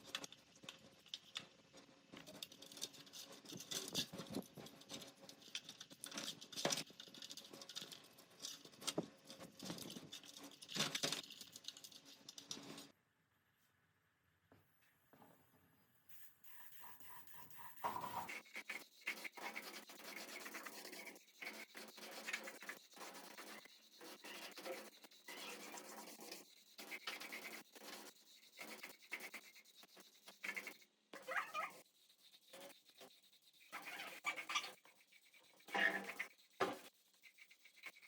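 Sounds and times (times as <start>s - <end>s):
hand scrubbing on metal part: 17.6s - 38.0s.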